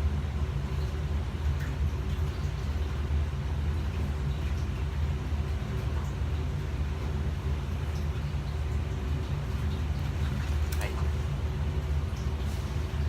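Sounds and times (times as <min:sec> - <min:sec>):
low machine hum: 0:00.0 - 0:13.0.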